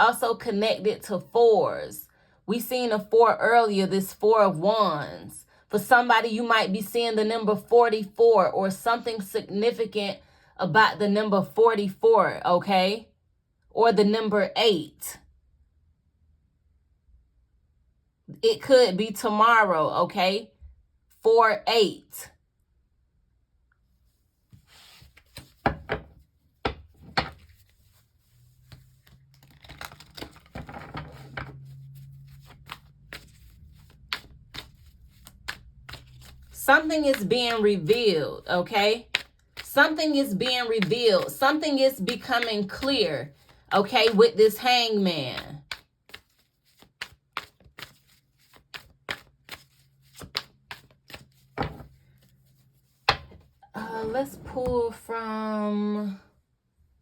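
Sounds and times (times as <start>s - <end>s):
cards shuffling: 24.5s - 38.1s, 38.8s - 53.6s
cards tapped and set down: 25.1s - 27.7s, 28.7s - 31.6s, 39.1s - 39.7s, 45.6s - 52.0s, 53.0s - 53.6s.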